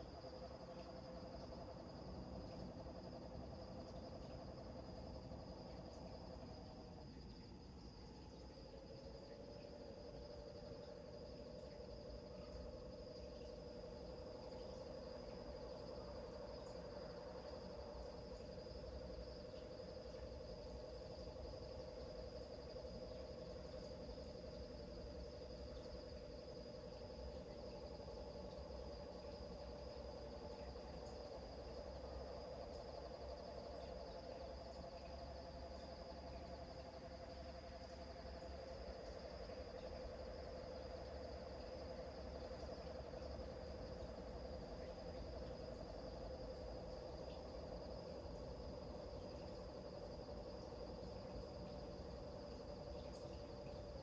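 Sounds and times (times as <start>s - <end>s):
crickets ringing: 3.8s - 44.0s.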